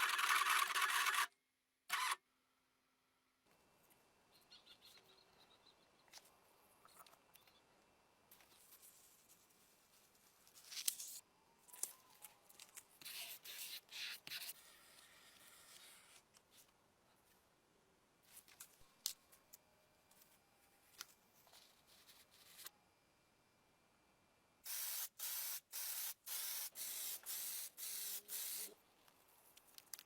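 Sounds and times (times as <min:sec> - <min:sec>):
small parts scraping and clicking: 0:00.0 - 0:01.3.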